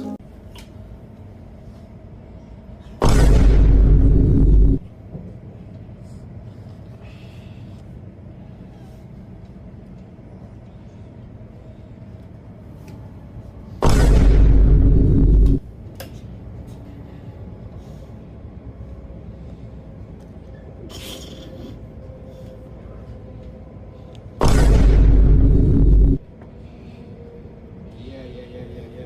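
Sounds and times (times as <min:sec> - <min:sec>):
steady low hum: 0:00.0 - 0:29.0
loud deep booms: 0:03.0 - 0:04.9, 0:13.8 - 0:15.6, 0:24.4 - 0:26.2.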